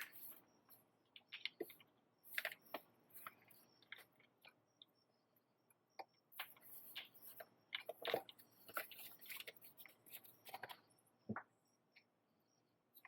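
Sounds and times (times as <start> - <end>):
clicks and rustling of small parts: 0.0 - 4.9, 6.0 - 11.4.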